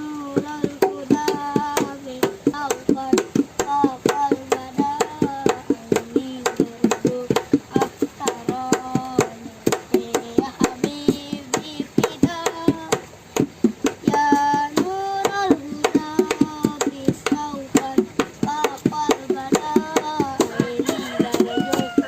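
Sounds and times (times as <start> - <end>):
boy singing: 0.0 - 22.0.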